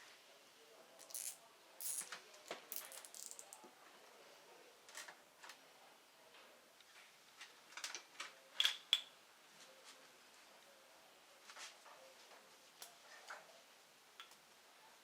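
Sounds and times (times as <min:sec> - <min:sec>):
metal parts clicking and clinking: 0:02.7 - 0:03.6.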